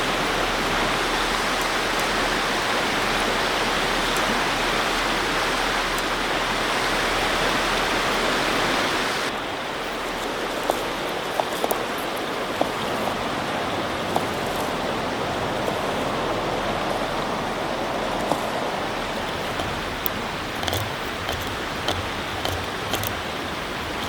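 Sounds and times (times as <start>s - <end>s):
river rushing: 0.0s - 24.0s
small clicks: 19.3s - 23.3s.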